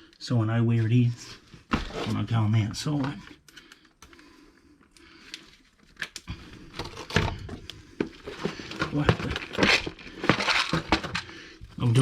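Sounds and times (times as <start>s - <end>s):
hands handling tools: 5.3s - 11.8s.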